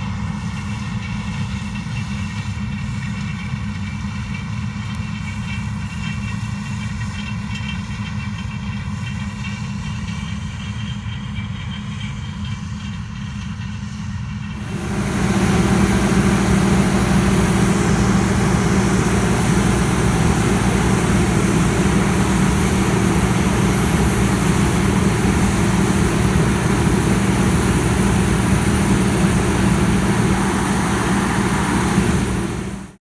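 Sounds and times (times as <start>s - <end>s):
heavy diesel engine running: 14.5s - 33.0s.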